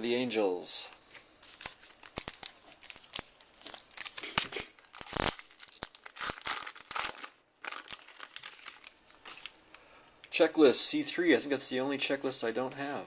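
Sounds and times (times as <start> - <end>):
wrapper crinkling and rustling: 1.4 - 9.6.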